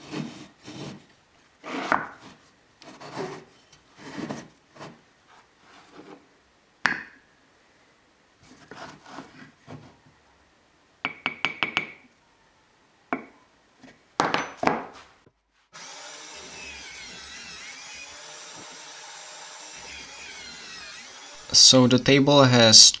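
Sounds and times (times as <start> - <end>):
scraping strokes on wood: 0.0 - 6.2, 15.8 - 21.6
rasping strokes: 15.8 - 22.0
steady even tool sound: 15.8 - 23.0.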